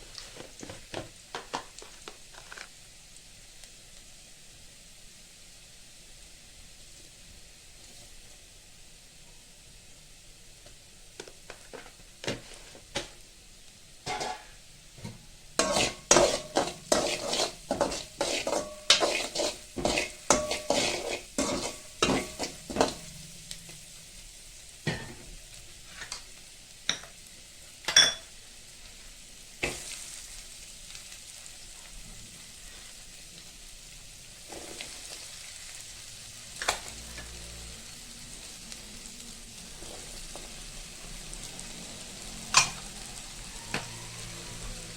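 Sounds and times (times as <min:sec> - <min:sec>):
food sizzling in a pan: 0:00.0 - 0:44.9
metal utensil clinking on pan: 0:14.0 - 0:14.6, 0:15.6 - 0:23.1, 0:27.9 - 0:28.3, 0:42.5 - 0:42.8.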